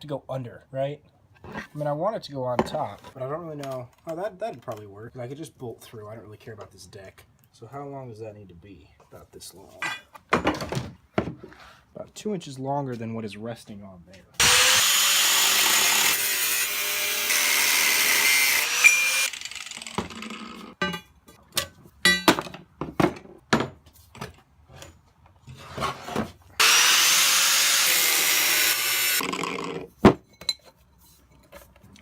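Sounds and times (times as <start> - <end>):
power saw cutting: 14.4 - 20.8, 26.6 - 29.8.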